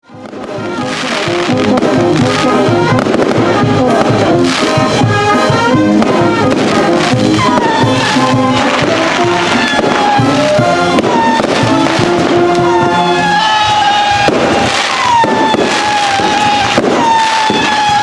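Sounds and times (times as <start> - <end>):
brass band music: 0.0 - 18.0
fireworks going off: 0.0 - 18.0.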